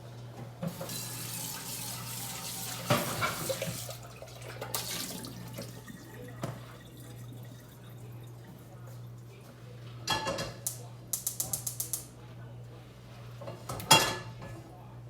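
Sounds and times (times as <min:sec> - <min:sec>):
tap water running into sink: 0:00.6 - 0:08.8
dishes clinking: 0:02.8 - 0:03.8, 0:13.5 - 0:14.6.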